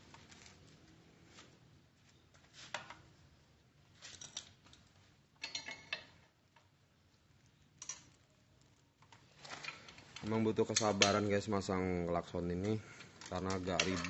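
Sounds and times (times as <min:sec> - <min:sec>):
hand tools clicking and clattering: 0:09.1 - 0:11.3, 0:12.5 - 0:14.0.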